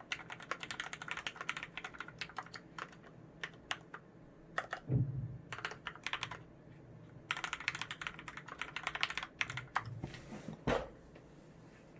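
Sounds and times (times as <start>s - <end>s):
mechanical keyboard typing: 0.0s - 4.9s, 5.5s - 6.5s, 7.2s - 9.9s.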